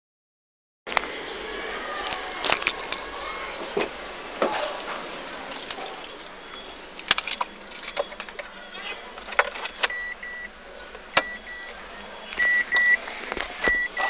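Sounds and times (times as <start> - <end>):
car steady hum: 2.2 - 14.0.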